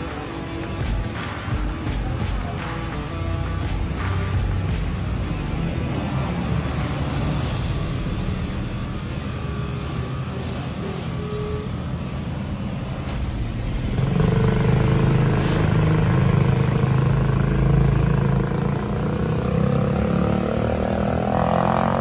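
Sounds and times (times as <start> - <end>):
motor vehicle engines running: 0.0 - 22.0
engine accelerating: 12.0 - 22.0.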